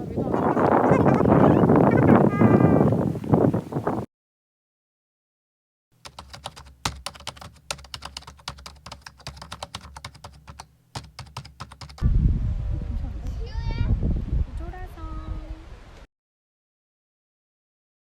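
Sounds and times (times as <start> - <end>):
computer keyboard typing: 6.0 - 12.0
low hum: 12.0 - 14.6.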